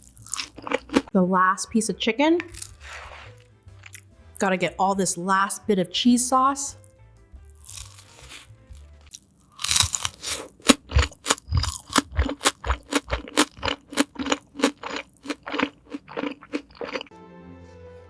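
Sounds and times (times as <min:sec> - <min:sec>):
crunchy chewing: 0:00.0 - 0:01.1, 0:02.5 - 0:04.1, 0:07.6 - 0:17.1
soft scrape: 0:02.8 - 0:03.5.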